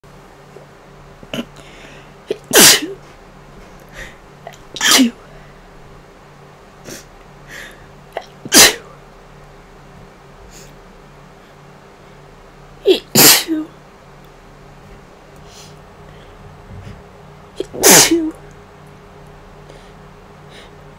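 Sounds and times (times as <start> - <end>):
person sneezing: 2.3 - 3.0, 4.8 - 5.2, 8.2 - 8.9, 12.9 - 13.7, 17.6 - 18.4.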